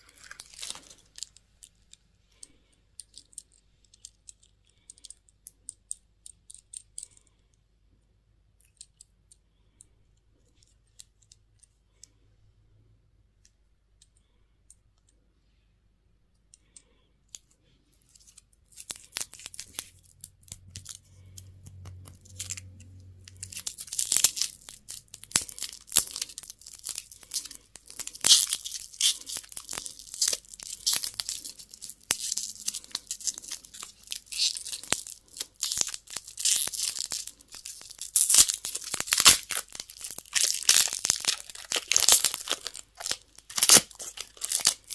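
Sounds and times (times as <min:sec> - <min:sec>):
candy wrapper tearing and crinkling: 0:00.0 - 0:07.2, 0:17.3 - 0:44.9.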